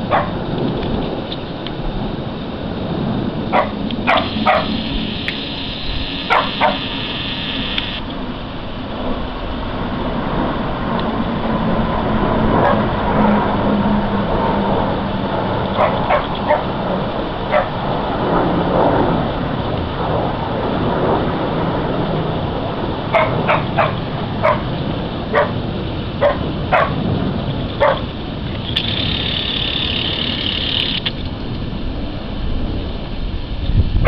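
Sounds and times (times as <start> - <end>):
aircraft droning overhead: 0.0 - 34.0
short sharp yelps: 3.6 - 5.0, 6.2 - 7.1
camera lens motor whining: 4.0 - 8.1, 28.5 - 31.2.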